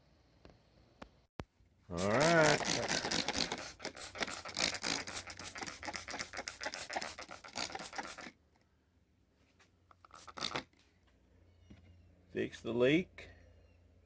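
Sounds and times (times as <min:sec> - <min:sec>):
hands scratching and rubbing: 0:02.0 - 0:08.3, 0:09.5 - 0:10.7.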